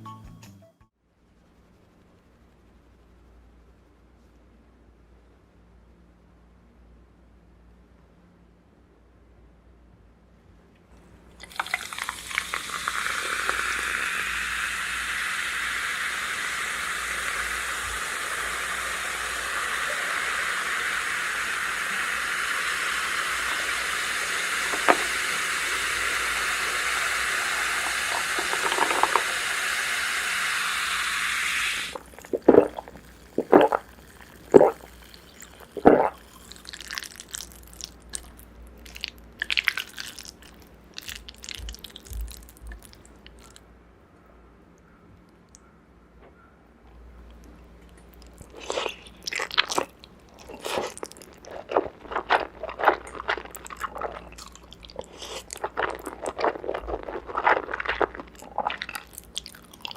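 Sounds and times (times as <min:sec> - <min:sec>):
food sizzling in a pan: 0:11.6 - 0:36.6
crunchy bites: 0:31.9 - 0:43.6, 0:47.3 - 0:59.9.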